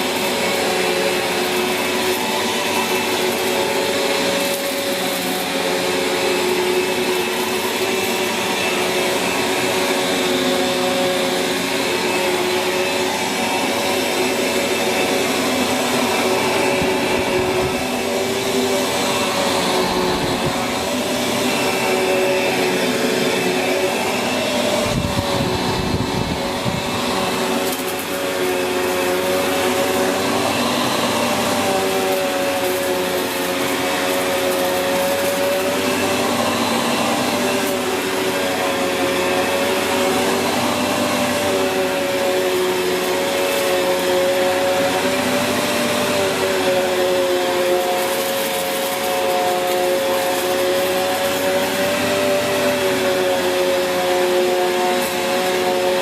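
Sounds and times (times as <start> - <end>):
vacuum cleaner running: 0.0 - 56.0.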